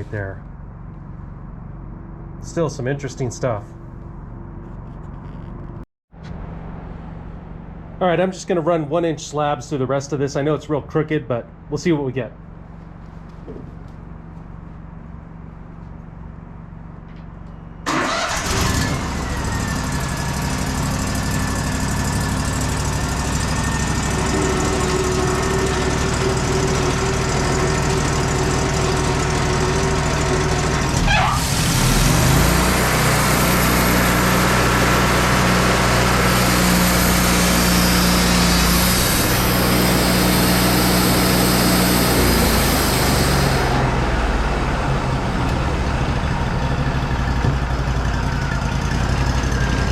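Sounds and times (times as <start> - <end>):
sawmill engine running: 17.9 - 49.9.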